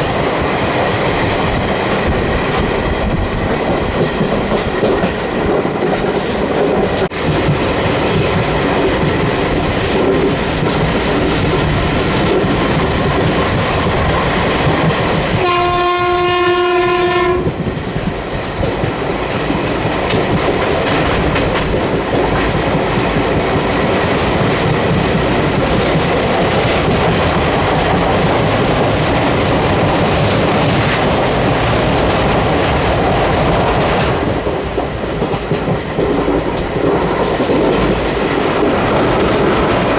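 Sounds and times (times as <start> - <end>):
train wheels clattering on rails: 0.0 - 39.9
train horn blast: 15.4 - 17.5.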